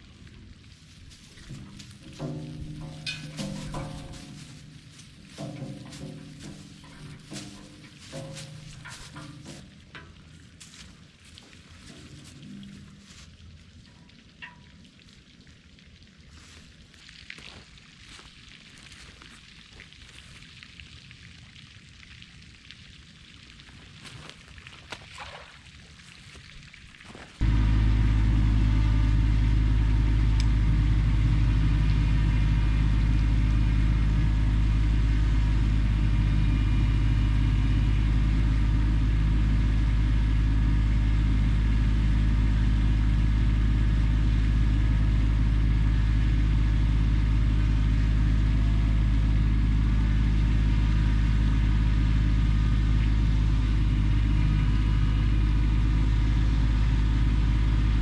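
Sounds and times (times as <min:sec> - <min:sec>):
tractor diesel engine running: 0:00.0 - 0:13.8, 0:27.0 - 0:58.0.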